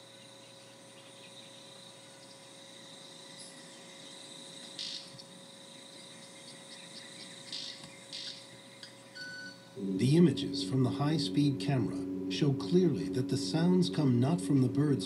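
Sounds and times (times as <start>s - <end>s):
insects droning: 0.0s - 15.0s
faint ticks: 4.6s - 5.4s, 6.0s - 9.0s
bird wing snaps: 4.8s - 5.2s, 7.5s - 8.4s.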